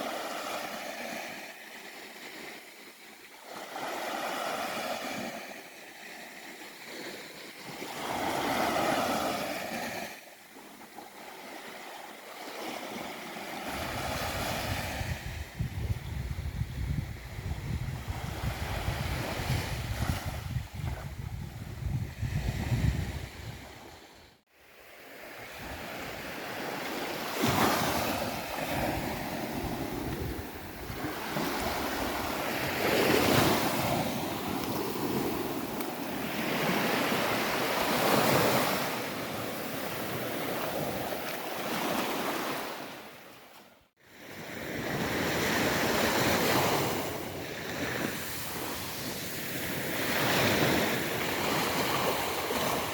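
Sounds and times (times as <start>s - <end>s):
sea waves breaking on beach: 0.0s - 15.6s, 22.1s - 52.9s
wind buffeting microphone: 13.8s - 24.1s, 27.4s - 41.1s.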